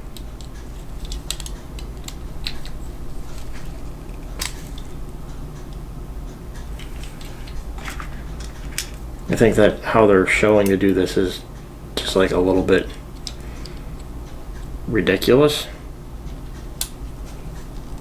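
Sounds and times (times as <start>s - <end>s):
steady low hum: 0.0s - 18.0s
plastic and metal clicks and scrapes: 0.2s - 4.9s.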